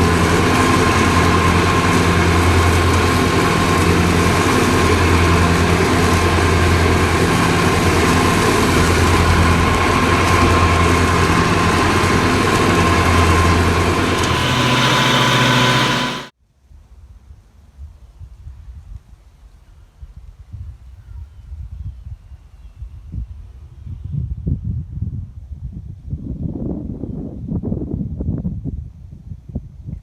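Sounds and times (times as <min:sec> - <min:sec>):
lawn mower engine running: 0:00.0 - 0:16.3.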